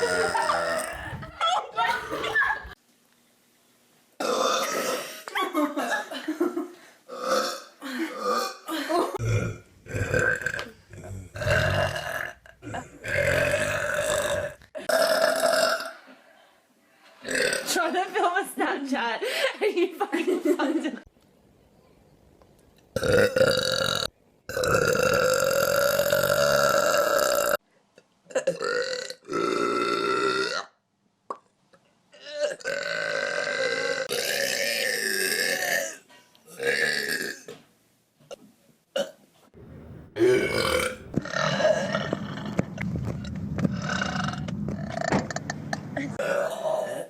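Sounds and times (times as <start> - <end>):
person burping: 0.0 - 1.3, 4.2 - 5.2, 7.1 - 16.0, 17.2 - 17.7, 23.0 - 27.6, 28.3 - 30.8, 32.2 - 37.6, 40.2 - 42.6, 43.7 - 47.0.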